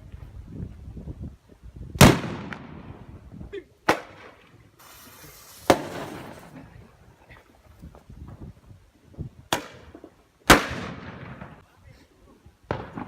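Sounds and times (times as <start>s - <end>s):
firework bangs echoing: 2.0s - 3.1s, 3.9s - 6.6s, 9.5s - 11.6s, 12.7s - 13.0s
firework hiss: 4.7s - 6.8s.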